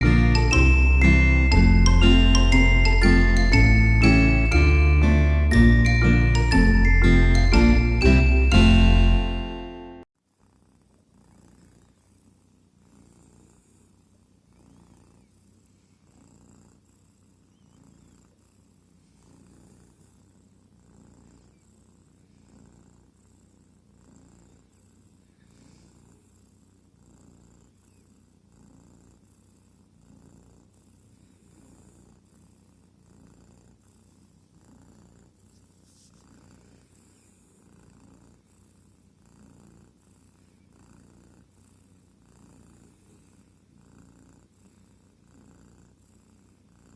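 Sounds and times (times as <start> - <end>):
kitten purring: 10.3 - 46.9.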